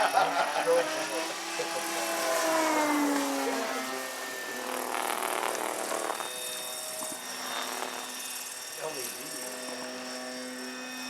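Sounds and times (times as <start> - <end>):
model plane engine buzzing: 0.0 - 11.0.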